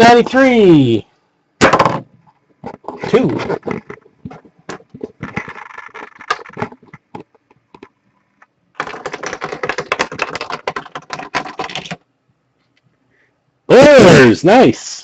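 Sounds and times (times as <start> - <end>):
rapid clicking and tapping: 2.7 - 8.0, 8.8 - 12.0.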